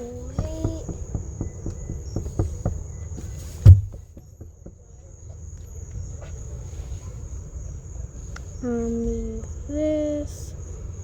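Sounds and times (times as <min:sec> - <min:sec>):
handling knocks: 0:00.0 - 0:05.8
quick footsteps: 0:00.0 - 0:06.4
loud thump: 0:00.2 - 0:04.9.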